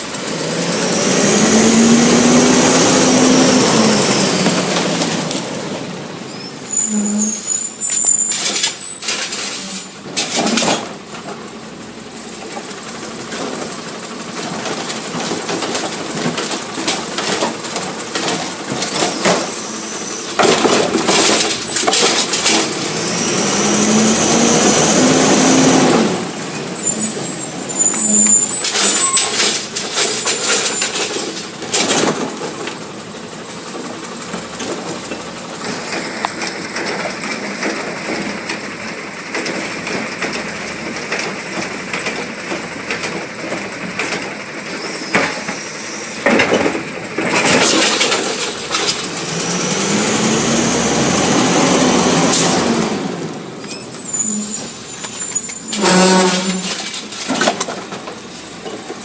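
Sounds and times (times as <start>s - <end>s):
truck engine revving: 0.0s - 10.0s, 12.8s - 57.8s
brakes squealing and hissing: 0.3s - 5.2s, 6.2s - 10.4s, 18.9s - 32.0s, 44.5s - 57.4s
loud rushing clattering: 46.2s - 50.0s
metal clanks and knocks: 55.1s - 59.0s.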